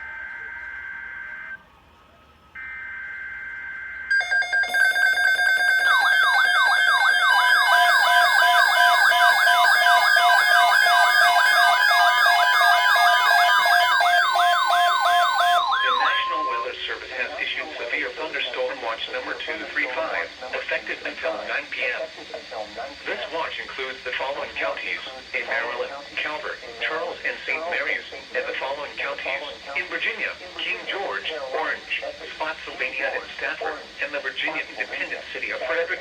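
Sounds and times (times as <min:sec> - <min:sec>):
warbling siren-like alert signal: 0:02.6 - 0:17.6
shrill buzzing data bursts: 0:04.1 - 0:17.1.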